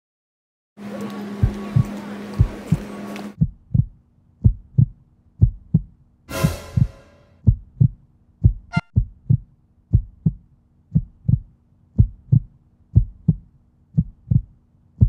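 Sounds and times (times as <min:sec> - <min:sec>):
heartbeat thumps: 0:01.4 - 0:15.0
high blip: 0:06.3 - 0:07.4, 0:08.7 - 0:08.9.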